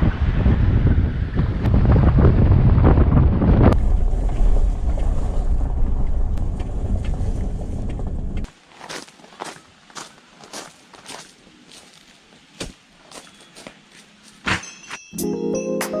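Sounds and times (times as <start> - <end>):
wind buffeting microphone: 0.0 - 8.5
soft footsteps: 6.6 - 15.0.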